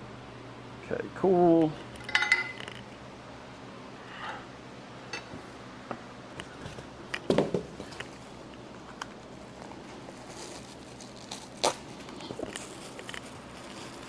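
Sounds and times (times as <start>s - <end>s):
engine parts and packaging handled: 9.0s - 14.0s.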